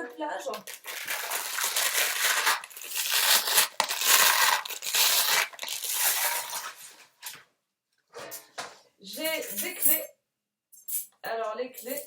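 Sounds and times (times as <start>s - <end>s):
plastic object crinkling and scraping: 0.5s - 7.4s.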